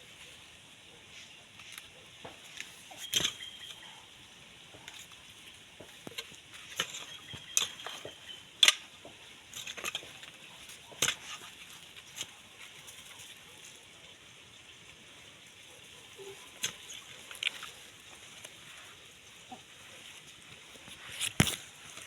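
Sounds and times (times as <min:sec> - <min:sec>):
digging potatoes in soil: 0:00.0 - 0:22.0.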